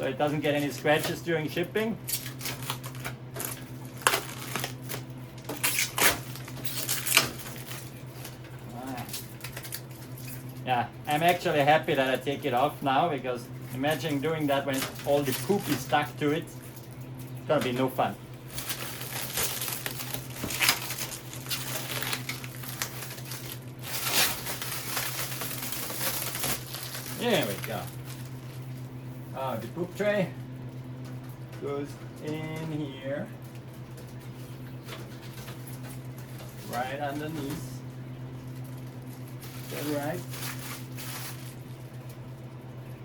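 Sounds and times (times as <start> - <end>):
steady low hum: 0.0 - 43.0
protective film peeling off: 2.0 - 8.4, 18.5 - 28.8.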